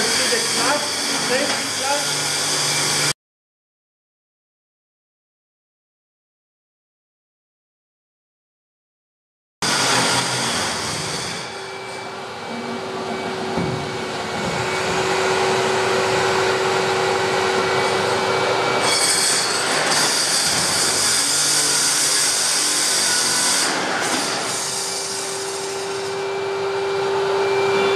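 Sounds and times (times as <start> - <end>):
concrete core drill running: 0.0 - 3.1, 9.6 - 27.9.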